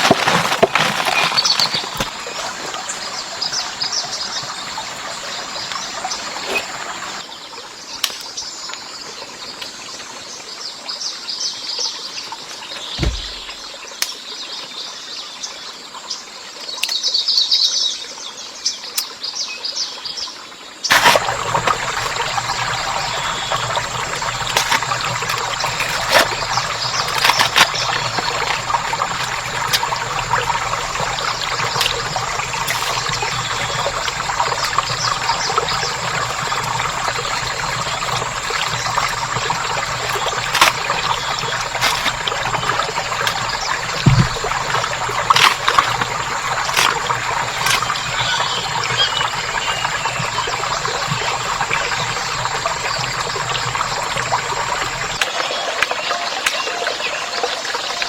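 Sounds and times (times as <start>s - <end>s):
birds chirping: 0.0s - 7.2s, 20.9s - 57.2s
trickling water: 0.0s - 10.6s, 20.9s - 58.0s
low thump: 13.0s - 13.4s.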